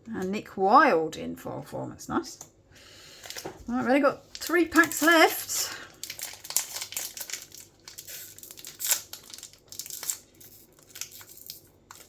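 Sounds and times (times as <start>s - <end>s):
foil wrapper crinkling and tearing: 3.1s - 12.0s.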